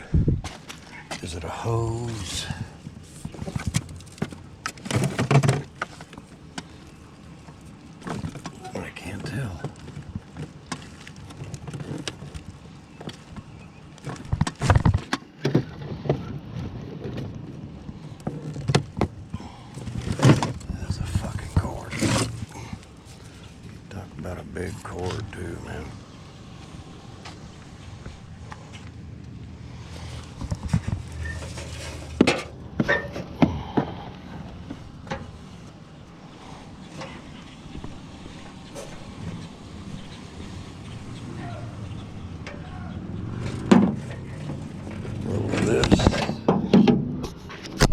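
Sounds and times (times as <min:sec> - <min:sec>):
scrap metal knocking and clanking: 0:30.0 - 0:35.6, 0:42.4 - 0:47.4.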